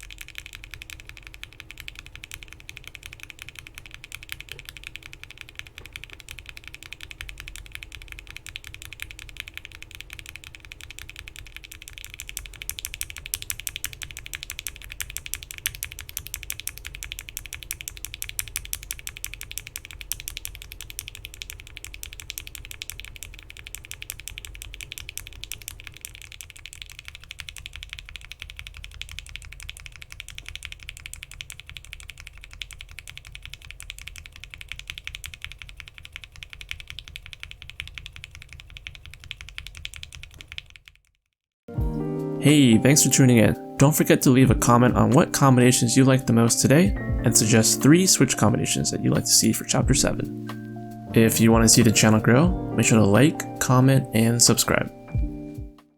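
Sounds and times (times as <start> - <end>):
fast mechanical keyboard typing: 0.0 - 41.1, 42.5 - 50.2.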